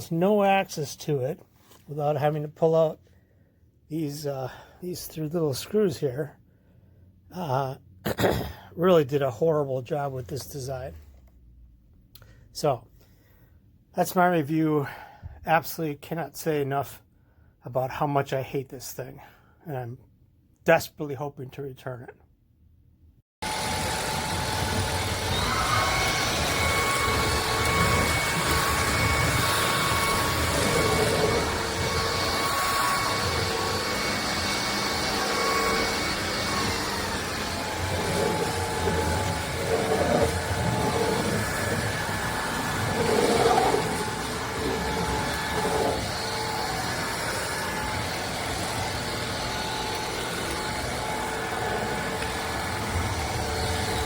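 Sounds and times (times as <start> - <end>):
vacuum cleaner whining: 23.4 - 54.0.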